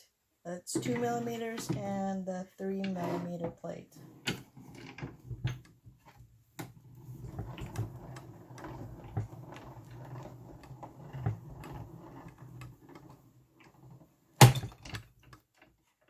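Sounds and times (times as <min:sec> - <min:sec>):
hand-cranked machine rollers rumbling: 0:04.2 - 0:15.6.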